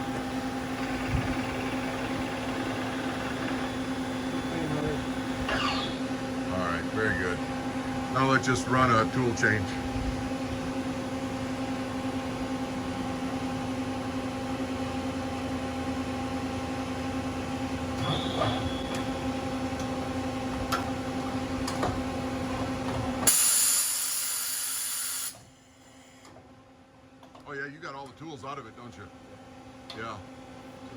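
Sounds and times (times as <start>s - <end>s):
milling machine whine: 0.0s - 25.8s
loud air hiss: 23.3s - 25.4s.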